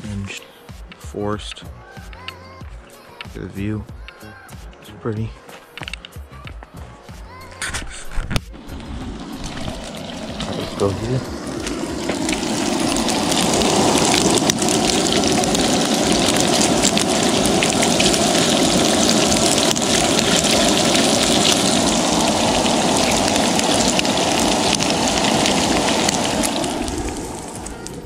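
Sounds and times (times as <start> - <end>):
rushing water: 8.5 - 28.0.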